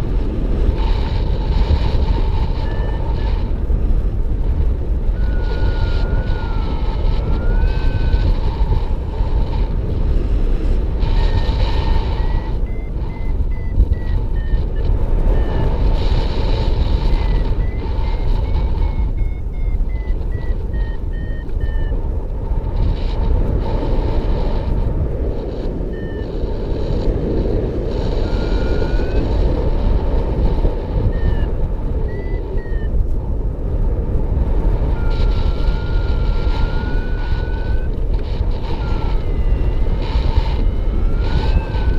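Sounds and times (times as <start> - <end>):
wind noise on microphone: 0.0 - 41.9
variometer beeping: 0.4 - 33.2, 34.3 - 41.9.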